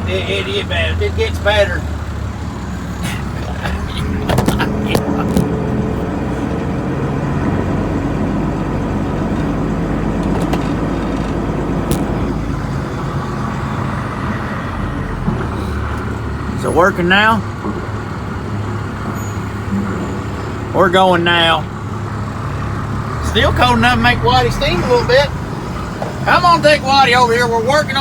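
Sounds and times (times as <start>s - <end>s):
vehicle engine running: 0.0s - 28.0s
sharp clicks and knocks: 4.3s - 5.6s, 10.2s - 12.3s.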